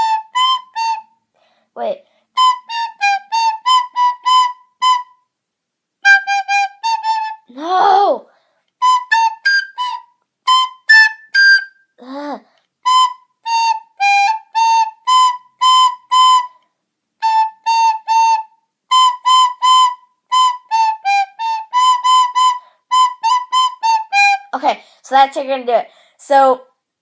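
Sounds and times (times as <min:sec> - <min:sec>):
recorder playing tune: 0:00.0 - 0:01.2, 0:02.4 - 0:05.2, 0:06.0 - 0:07.5, 0:08.8 - 0:11.9, 0:12.8 - 0:16.6, 0:17.2 - 0:24.5.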